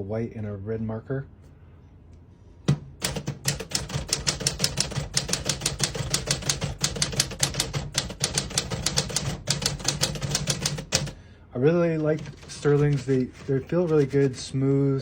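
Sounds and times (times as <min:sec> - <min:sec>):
typewriter key strikes: 0:03.0 - 0:11.2.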